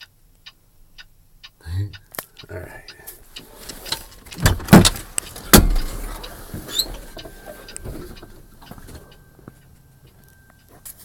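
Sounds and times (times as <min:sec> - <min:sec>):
rustling handling noise: 0:03.2 - 0:11.0
loud knocks: 0:04.3 - 0:07.3.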